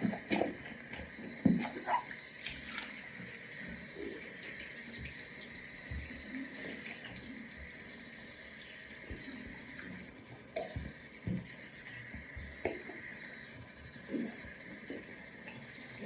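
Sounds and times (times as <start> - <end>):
tap water running into sink: 4.3 - 7.8.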